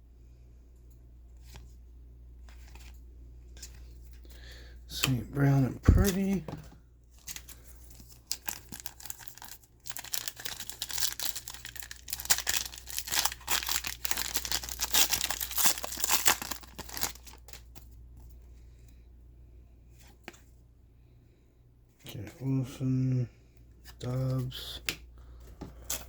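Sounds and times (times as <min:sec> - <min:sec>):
foil wrapper crinkling: 0:07.2 - 0:17.8.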